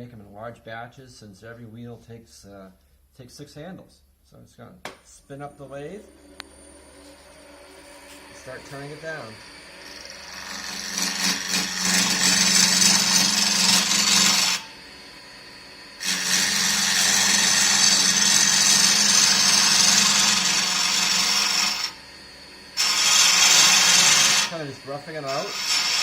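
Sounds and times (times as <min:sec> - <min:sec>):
wood lathe cutting hiss: 0:05.6 - 0:26.0
lathe motor hum: 0:05.7 - 0:26.0.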